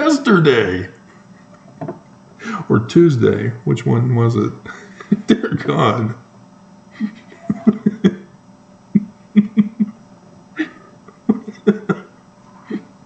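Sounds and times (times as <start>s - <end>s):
man speaking: 0.0s - 1.0s, 2.6s - 4.7s, 5.4s - 6.2s.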